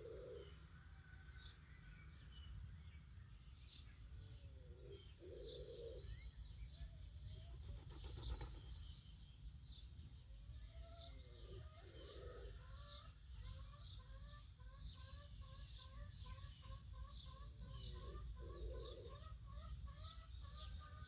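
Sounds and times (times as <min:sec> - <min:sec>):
dove cooing: 0:00.0 - 0:00.6, 0:04.6 - 0:06.1, 0:10.9 - 0:13.0, 0:17.4 - 0:21.0
small birds chirping: 0:00.0 - 0:00.7, 0:01.3 - 0:21.0.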